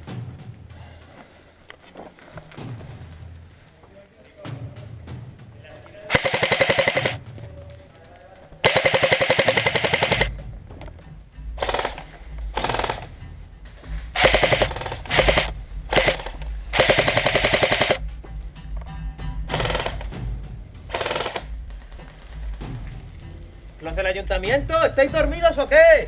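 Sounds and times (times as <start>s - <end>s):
airsoft rifle full-auto rattle: 6.1s - 7.2s, 8.6s - 10.3s, 11.6s - 12.0s, 12.6s - 13.1s, 14.2s - 18.0s, 19.6s - 20.1s, 20.9s - 21.5s
gearbox whining: 8.6s - 10.3s, 14.2s - 18.0s.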